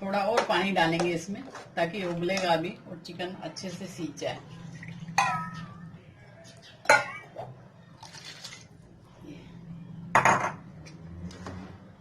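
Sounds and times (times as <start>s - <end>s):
water pouring into pot: 4.5s - 5.8s, 8.0s - 8.8s.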